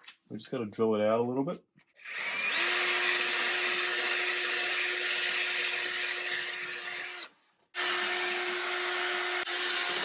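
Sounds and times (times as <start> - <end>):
electric drill whining: 2.0 - 10.0.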